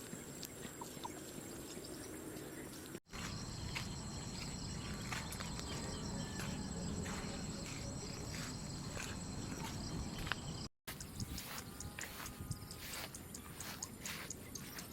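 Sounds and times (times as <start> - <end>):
insects trilling: 3.1 - 14.9.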